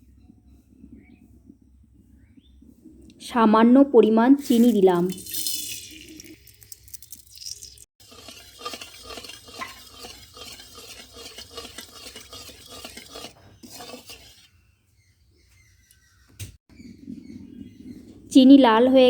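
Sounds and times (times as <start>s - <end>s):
spoon scraping a pan: 8.0s - 14.6s.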